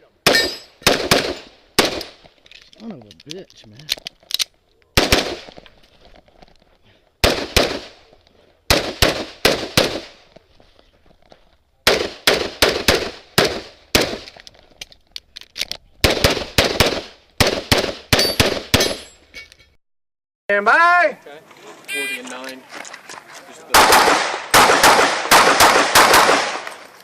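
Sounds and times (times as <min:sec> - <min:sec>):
pistol shots with echo: 0:00.2 - 0:02.2, 0:05.0 - 0:05.5, 0:07.2 - 0:08.0, 0:08.7 - 0:10.2, 0:11.8 - 0:14.2, 0:23.7 - 0:26.8.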